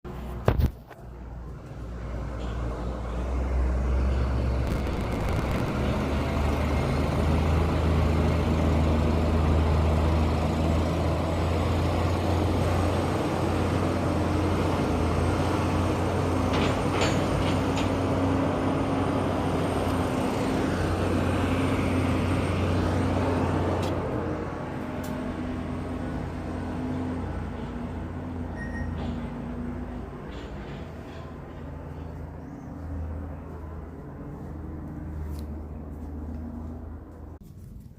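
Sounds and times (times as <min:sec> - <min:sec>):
large engine droning: 0:01.0 - 0:37.4.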